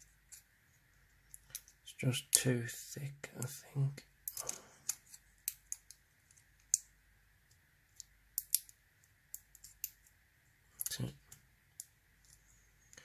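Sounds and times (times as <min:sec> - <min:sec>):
padlock clicks and taps: 0:08.0 - 0:10.0.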